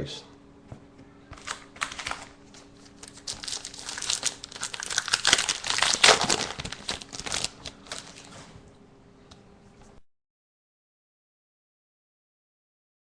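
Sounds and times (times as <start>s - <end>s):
wrapper crinkling and tearing: 1.4s - 8.4s.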